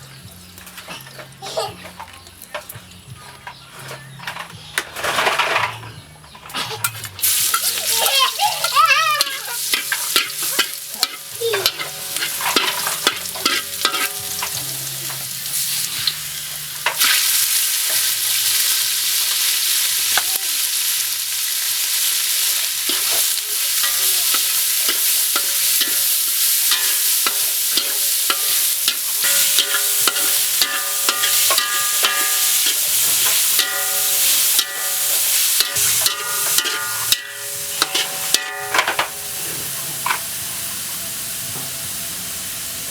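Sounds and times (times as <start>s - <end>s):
utensil scraping a pan: 3.2s - 18.8s, 22.7s - 40.3s
loud sizzle: 6.8s - 42.9s
food frying in a pan: 7.2s - 42.9s.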